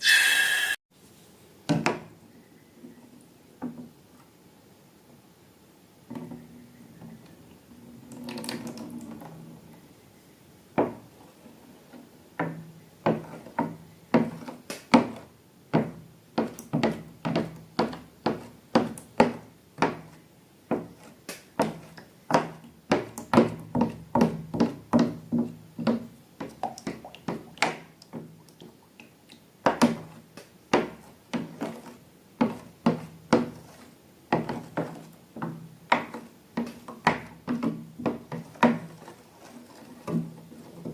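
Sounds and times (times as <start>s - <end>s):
hands working slime: 13.0s - 40.9s.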